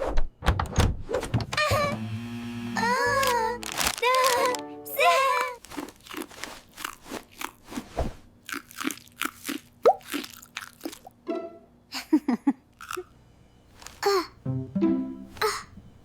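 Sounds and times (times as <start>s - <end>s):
crunchy snack chewing: 5.3s - 7.8s, 8.4s - 11.1s, 12.8s - 13.1s.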